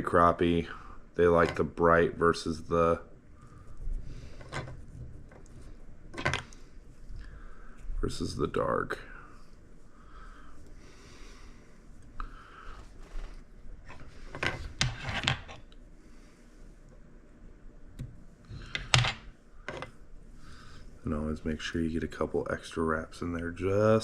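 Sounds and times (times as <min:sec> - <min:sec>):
soft rubbing of thread: 0:03.4 - 0:08.4, 0:11.5 - 0:15.2.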